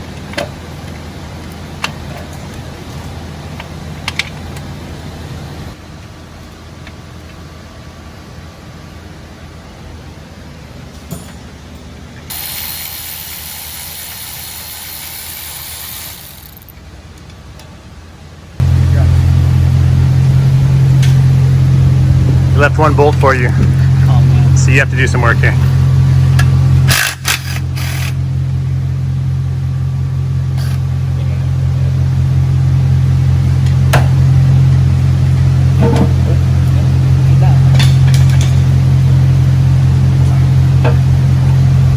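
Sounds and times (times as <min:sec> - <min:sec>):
low machine hum: 0:00.0 - 0:41.9
air ratchet running: 0:12.3 - 0:16.7, 0:26.9 - 0:28.2.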